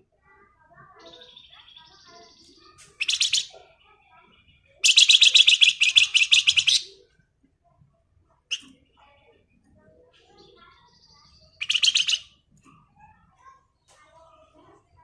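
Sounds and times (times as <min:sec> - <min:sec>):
bird rattling song: 0:01.0 - 0:03.6, 0:04.8 - 0:07.0, 0:11.1 - 0:12.9.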